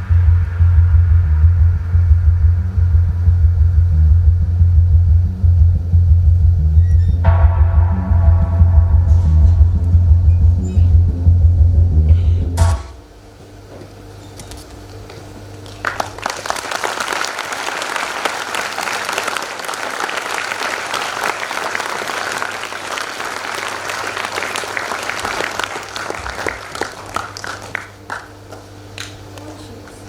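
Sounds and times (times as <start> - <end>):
audience applauding: 15.6 - 29.2.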